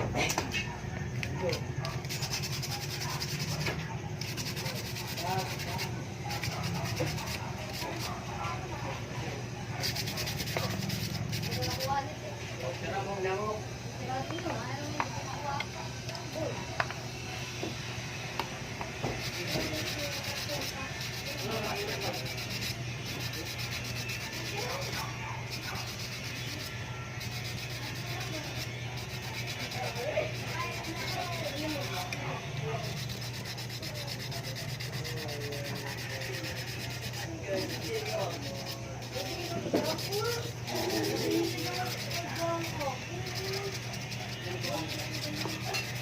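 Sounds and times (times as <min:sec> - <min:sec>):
steady low hum: 0:00.0 - 0:46.0
scratchy abrasive sanding: 0:01.4 - 0:08.3, 0:09.7 - 0:12.1, 0:19.0 - 0:46.0.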